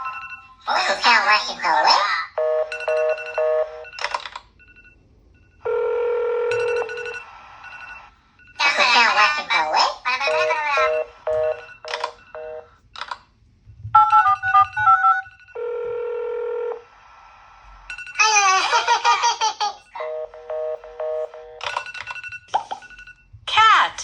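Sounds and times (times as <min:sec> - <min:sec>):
electronic two-tone phone beeps: 0:02.4 - 0:05.7, 0:10.2 - 0:12.7, 0:14.0 - 0:16.4, 0:20.0 - 0:23.3
steady ringing tone: 0:04.6 - 0:08.6, 0:17.6 - 0:18.8.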